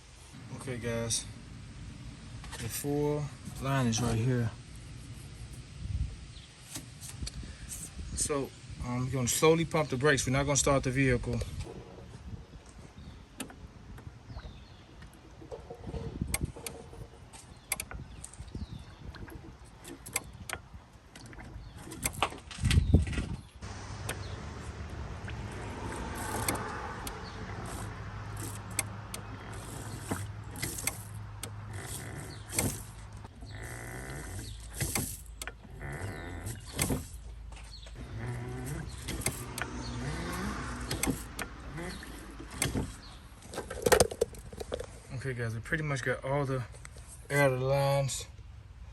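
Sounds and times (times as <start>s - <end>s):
brake pedal clicks and knocks: 11.3s - 45.0s.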